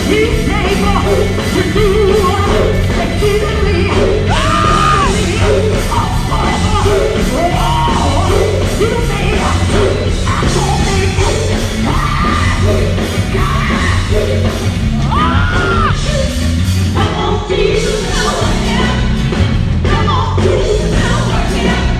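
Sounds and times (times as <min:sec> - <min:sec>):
group singing gospel: 0:00.0 - 0:15.8, 0:20.4 - 0:21.9
band playing with strong bass: 0:00.0 - 0:21.9.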